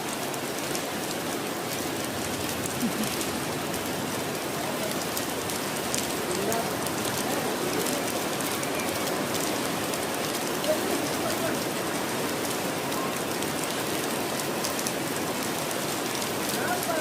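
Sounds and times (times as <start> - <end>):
rain falling and splashing: 0.0 - 17.0.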